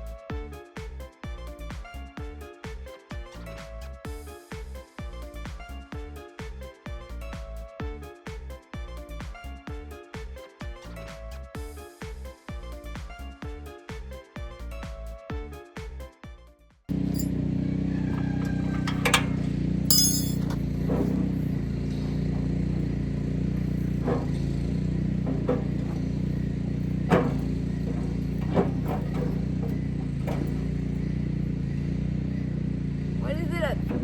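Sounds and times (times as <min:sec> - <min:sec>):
engine running: 0:16.9 - 0:34.0
metallic clinks of tools: 0:17.0 - 0:17.4, 0:19.9 - 0:20.6.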